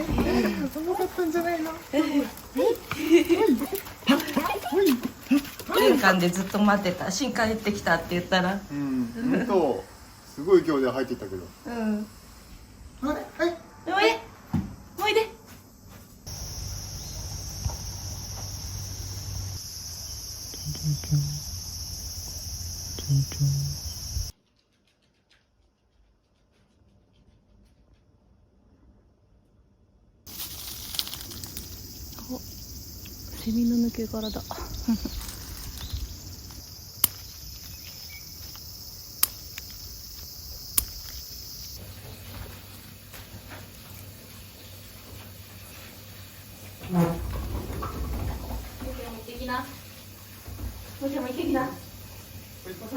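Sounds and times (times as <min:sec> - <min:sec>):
insect chorus: 0:00.0 - 0:24.4, 0:30.3 - 0:52.9
short low sounds: 0:20.6 - 0:21.5
sharp clicks: 0:38.5 - 0:41.2.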